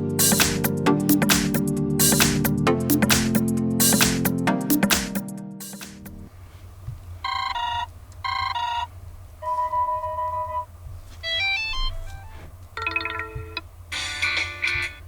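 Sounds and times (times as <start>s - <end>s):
electronic phone ringtone: 7.3s - 14.8s.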